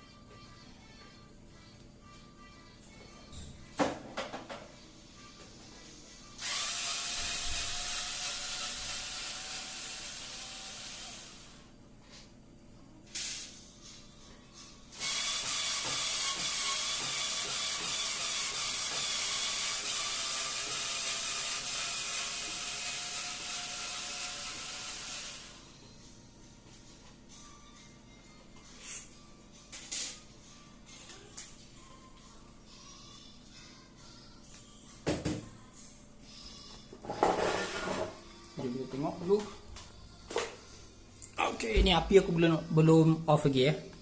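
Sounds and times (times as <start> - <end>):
electric screwdriver running: 6.4 - 11.6, 15.0 - 25.6.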